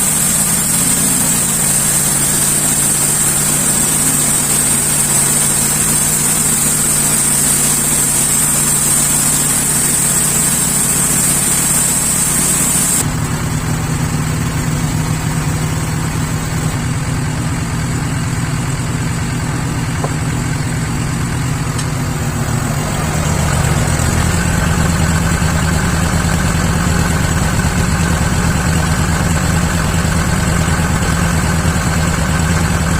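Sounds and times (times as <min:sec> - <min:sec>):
saw cutting timber with hiss: 0:00.0 - 0:13.1, 0:20.0 - 0:32.9
saw motor humming: 0:00.0 - 0:13.4, 0:19.4 - 0:32.9.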